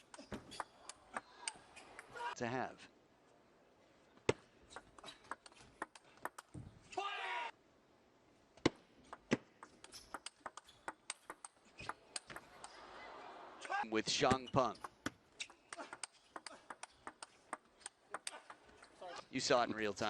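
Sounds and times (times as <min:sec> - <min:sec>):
table tennis ball clicking: 0:09.1 - 0:12.8, 0:14.8 - 0:18.9.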